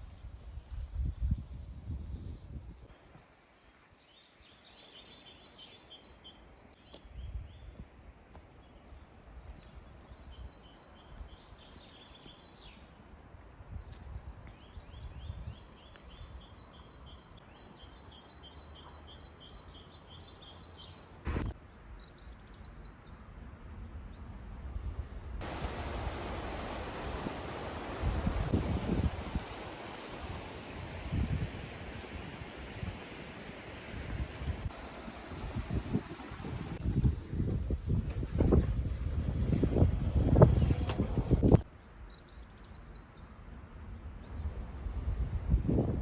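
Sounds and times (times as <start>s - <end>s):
low rumble of wind on microphone: 0.0s - 2.9s, 13.4s - 16.5s, 22.6s - 41.8s, 42.6s - 46.0s.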